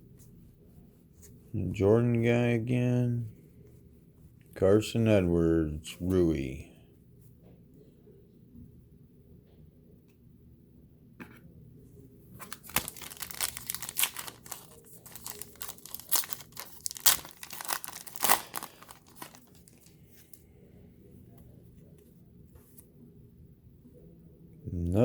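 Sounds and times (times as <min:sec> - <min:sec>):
plastic wrapper tearing and crinkling: 0:12.4 - 0:20.0.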